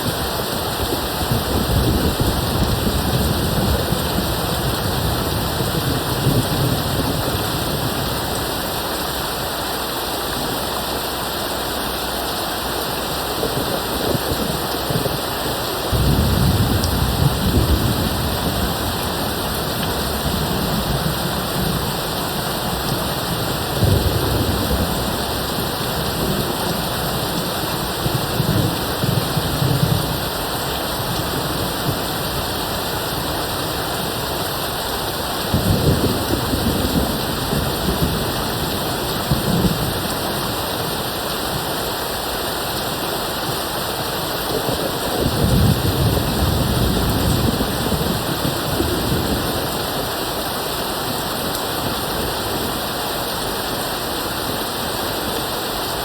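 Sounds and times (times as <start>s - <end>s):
steady rain: 0.0s - 56.0s
distant thunder rumbling: 15.9s - 34.3s, 34.9s - 41.2s, 44.3s - 50.2s.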